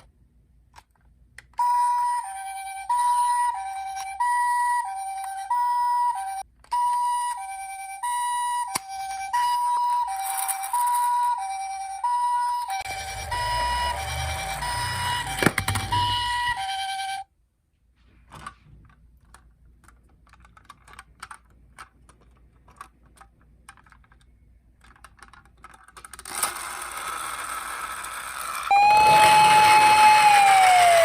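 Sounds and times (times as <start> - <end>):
toy siren: 1.5 - 17.3, 26.3 - 31.0
plastic toy clicks and rattles: 9.9 - 11.3, 18.3 - 28.7.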